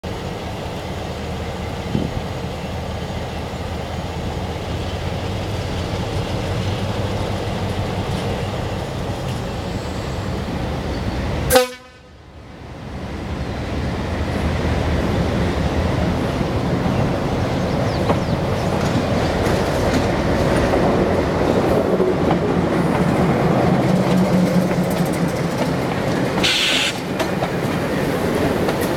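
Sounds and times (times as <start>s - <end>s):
diesel locomotives running: 0.0s - 28.9s
locomotive horn toot: 11.5s - 12.2s, 26.4s - 27.1s.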